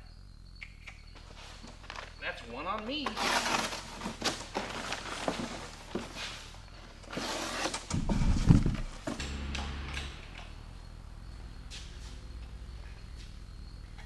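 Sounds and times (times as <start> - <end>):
heavy low thud: 7.9 - 12.8.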